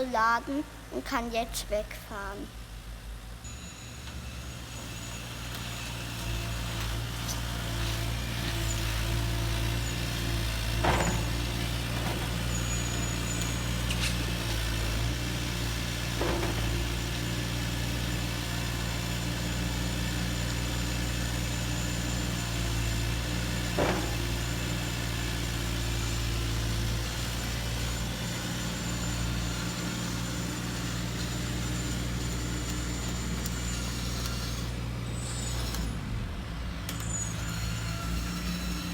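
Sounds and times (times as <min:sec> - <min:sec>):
toy truck motor hum and whine: 0:02.5 - 0:38.9.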